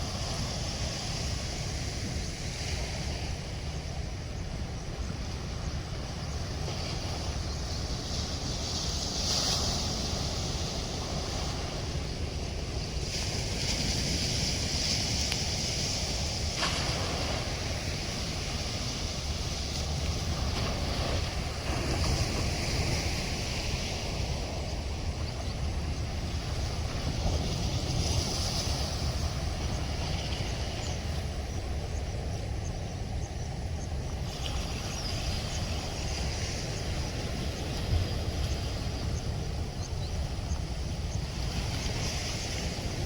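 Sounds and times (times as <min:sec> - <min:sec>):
wind buffeting microphone: 0:00.0 - 0:43.0.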